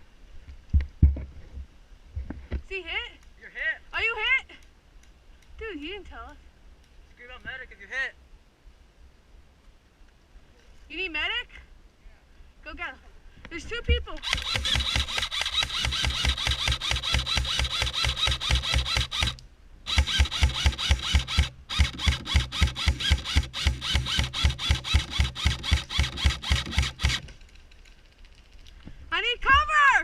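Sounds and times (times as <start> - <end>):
gear rattling: 14.2 - 28.8.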